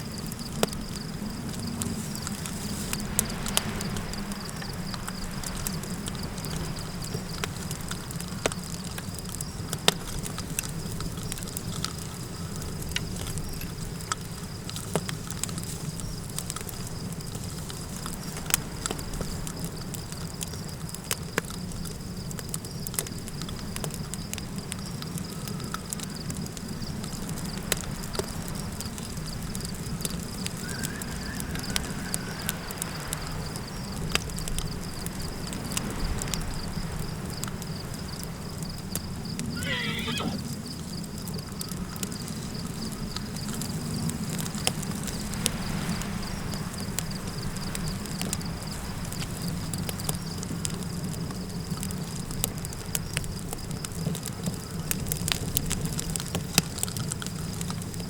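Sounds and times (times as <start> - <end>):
campfire crackling and popping: 0.0 - 58.0
insect trill: 30.2 - 34.0, 38.0 - 41.4.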